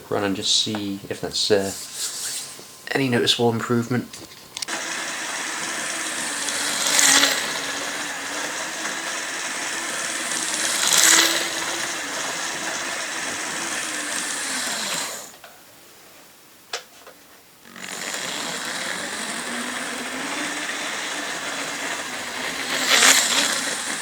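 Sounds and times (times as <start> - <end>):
model train motor whine: 3.4 - 15.4, 17.6 - 24.0
wheel and rail noise: 3.9 - 15.5, 17.0 - 24.0.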